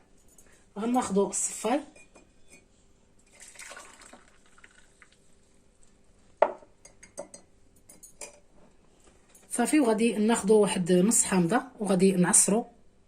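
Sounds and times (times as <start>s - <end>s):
liquid trickling into a glass: 3.2s - 5.3s.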